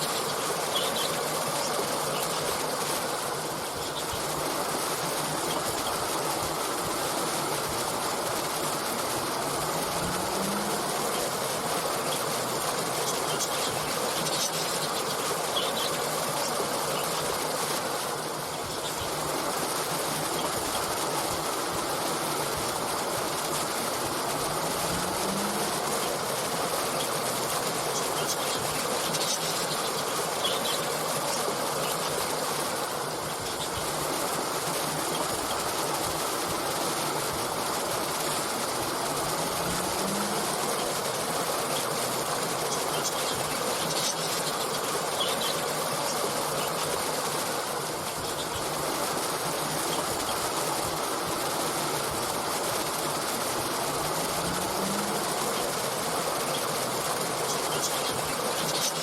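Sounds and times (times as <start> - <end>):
faint bird chirps: 0.0 - 2.6, 10.0 - 17.5, 26.8 - 32.4, 42.6 - 47.0
stream of water flowing: 0.0 - 59.0.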